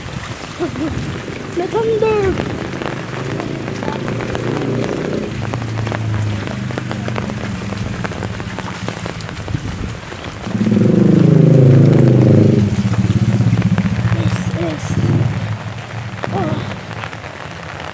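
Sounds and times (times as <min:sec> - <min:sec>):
engine hum: 0:00.0 - 0:17.9
rain drops falling: 0:00.0 - 0:17.9.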